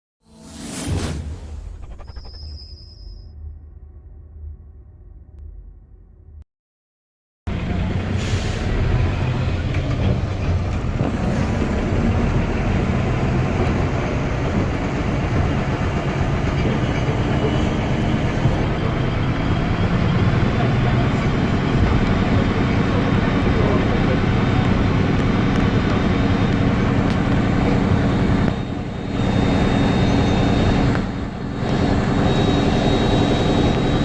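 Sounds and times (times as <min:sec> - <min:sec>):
diesel bus engine droning: 0:07.5 - 0:34.0.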